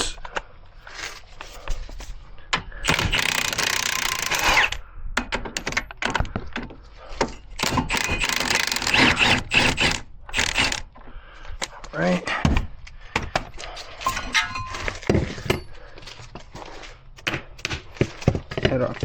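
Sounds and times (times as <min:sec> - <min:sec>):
impact wrench hammering: 0:07.6 - 0:10.8
tools clinking: 0:14.0 - 0:15.8.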